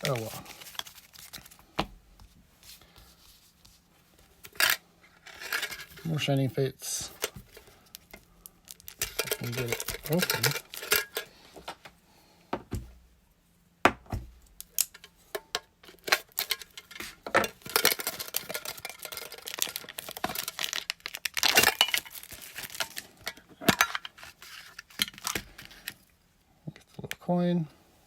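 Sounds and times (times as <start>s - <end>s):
dull thumps: 12.5s - 13.0s, 13.8s - 14.4s
packaging tearing and crinkling: 17.6s - 23.2s.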